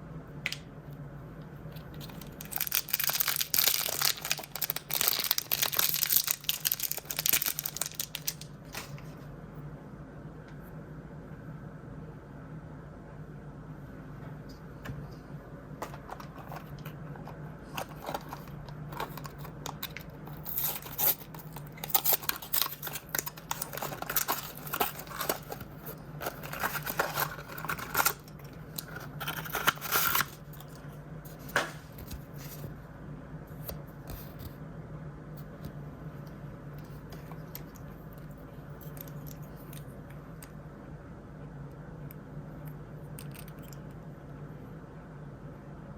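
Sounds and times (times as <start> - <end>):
low steady hum: 0.0 - 45.9
packaging crinkling and tearing: 1.8 - 9.0, 17.8 - 30.8.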